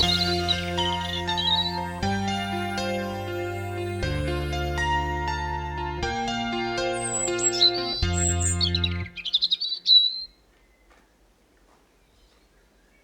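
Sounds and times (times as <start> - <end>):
songbird chirping and trilling: 0.0 - 3.8, 6.5 - 11.1
soft piano melody: 0.0 - 9.2.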